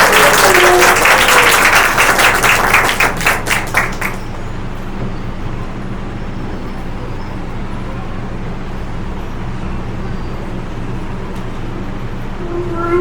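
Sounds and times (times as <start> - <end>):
audience applauding: 0.0 - 4.4.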